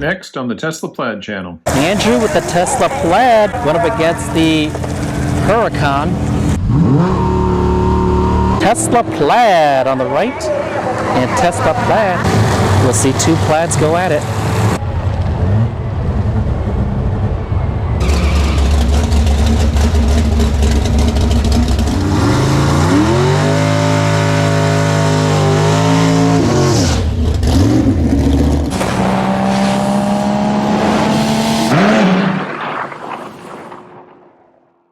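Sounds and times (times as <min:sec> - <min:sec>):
low engine rumble: 0:01.7 - 0:06.7
engine revving up: 0:01.7 - 0:17.2, 0:18.0 - 0:34.1.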